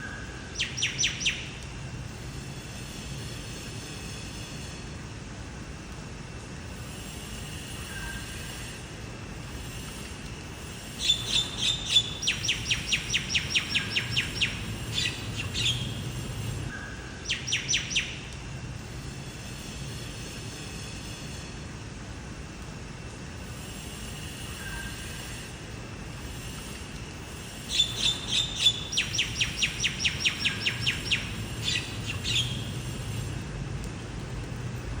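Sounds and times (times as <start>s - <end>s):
songbird singing: 0.0s - 1.6s, 11.0s - 18.3s, 27.7s - 32.9s
low steady background rumble: 8.5s - 35.0s.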